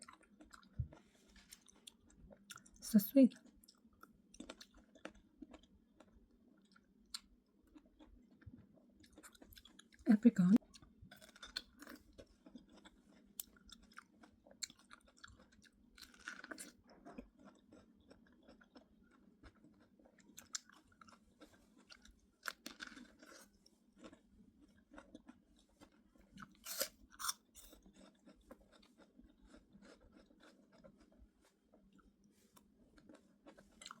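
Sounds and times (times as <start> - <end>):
person chewing fruit: 0.0 - 10.0, 10.6 - 34.0.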